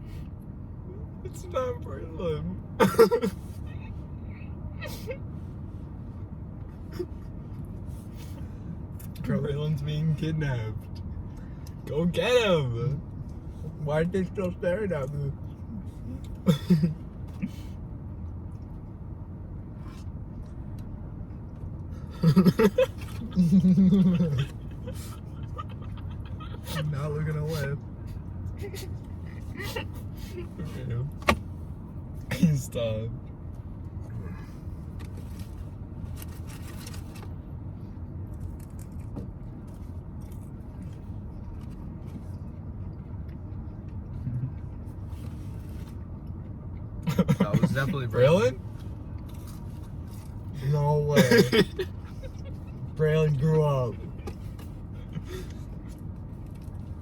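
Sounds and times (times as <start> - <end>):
steady low rumble: 0.0 - 57.0
faint light clicks and scrapes: 34.8 - 37.4, 44.8 - 46.5.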